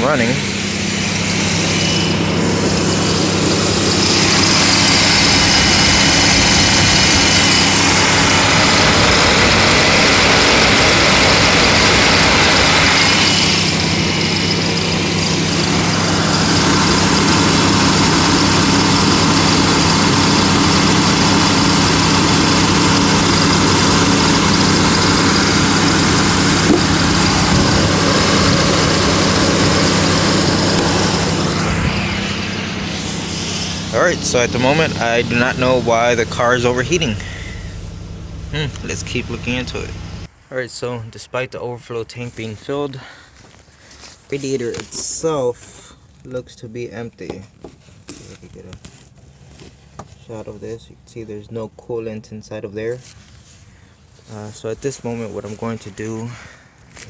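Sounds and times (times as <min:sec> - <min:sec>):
radiator cooling fans rushing: 0:00.0 - 0:40.3
engine idle hum: 0:00.0 - 0:40.4.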